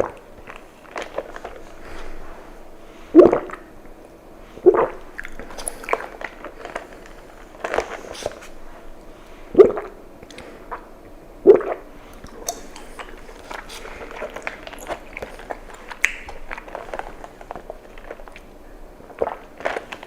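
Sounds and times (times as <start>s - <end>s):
person gulping a drink: 3.2s - 3.8s, 4.6s - 8.6s, 9.5s - 20.0s
wet chewing clicks: 4.6s - 20.0s.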